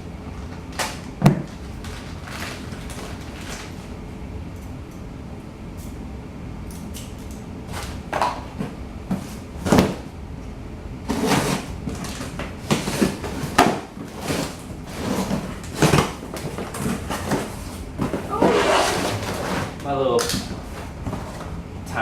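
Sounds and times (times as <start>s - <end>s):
packaging rustling and scraping: 1.5s - 3.9s, 11.1s - 21.5s.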